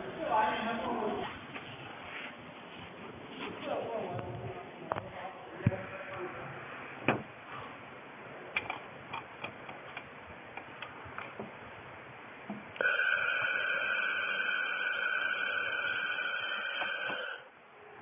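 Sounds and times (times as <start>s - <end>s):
high-pitched welding machine buzz: 12.8s - 17.5s.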